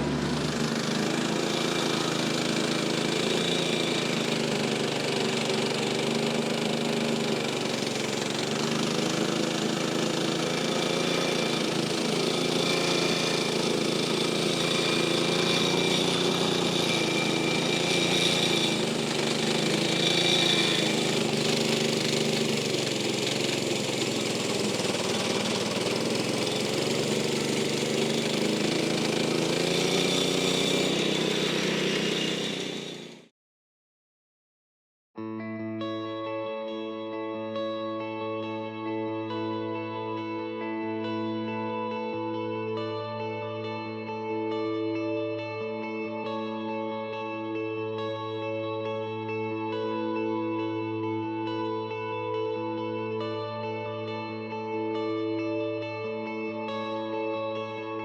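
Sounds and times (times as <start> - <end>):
tractor diesel engine running: 0.0 - 33.2.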